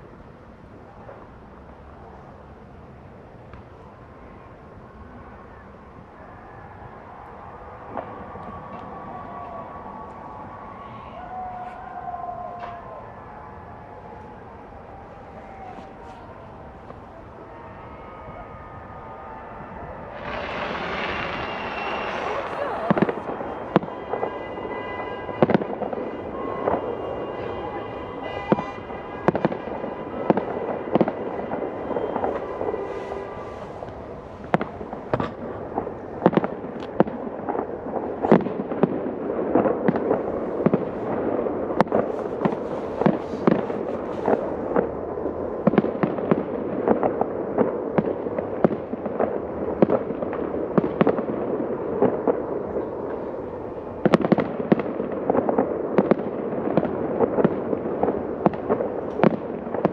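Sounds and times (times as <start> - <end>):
fireworks bangs and crackles: 3.4 - 59.9
held multi-pitch tone: 20.4 - 34.2.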